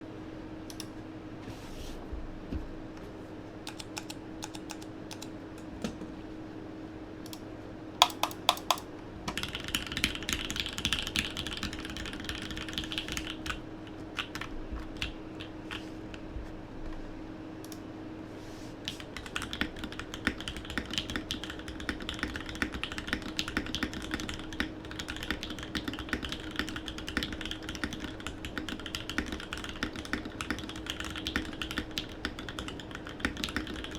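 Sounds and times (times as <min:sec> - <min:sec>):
mechanical keyboard typing: 0:03.6 - 0:05.6, 0:08.0 - 0:13.6, 0:14.2 - 0:15.8, 0:18.9 - 0:33.9.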